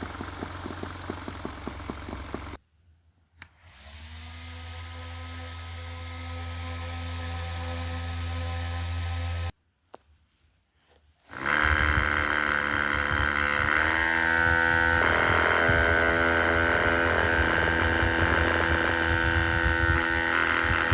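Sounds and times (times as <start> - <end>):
model helicopter motor whine: 0.0 - 2.6, 11.3 - 20.9.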